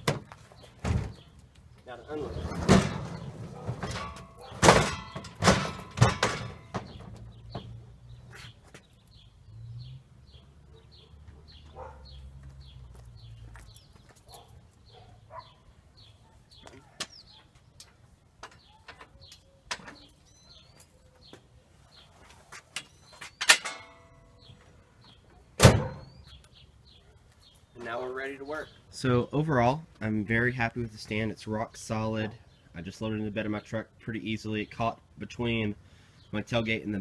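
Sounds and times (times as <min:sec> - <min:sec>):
bird chirping: 0:00.0 - 0:05.4, 0:06.0 - 0:29.8
knocks and rattles: 0:02.4 - 0:07.7
ringing metal clang: 0:03.8 - 0:07.0, 0:23.4 - 0:24.4.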